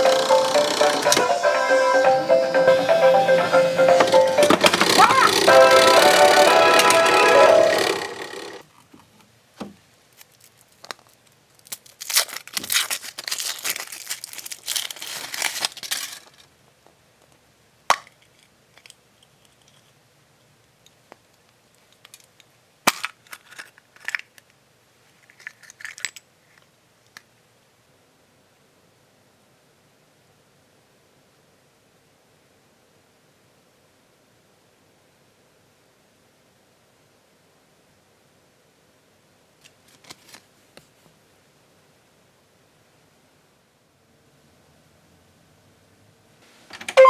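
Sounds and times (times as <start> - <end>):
packaging crinkling and tearing: 10.1 - 16.4, 39.6 - 40.5.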